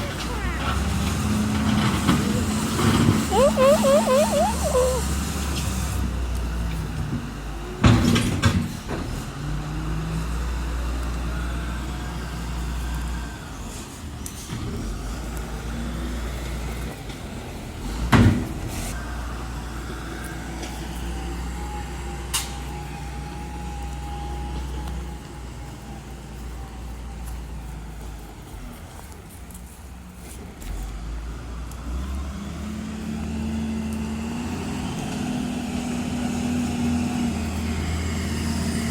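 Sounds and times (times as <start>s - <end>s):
heavy vehicle engine rumbling: 0.0s - 28.7s.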